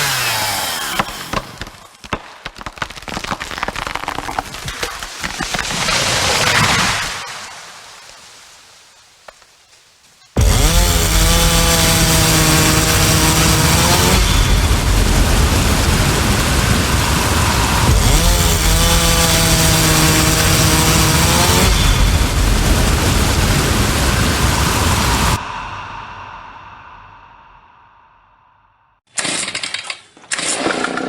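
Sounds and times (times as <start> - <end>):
chainsaw cutting wood: 0.0 - 2.8, 10.4 - 25.4.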